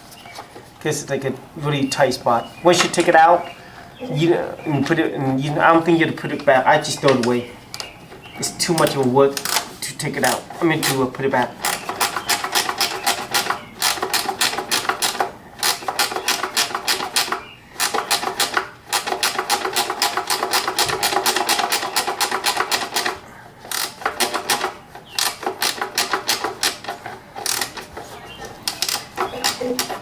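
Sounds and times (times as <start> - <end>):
ratchet wrench clicking: 11.6 - 27.8.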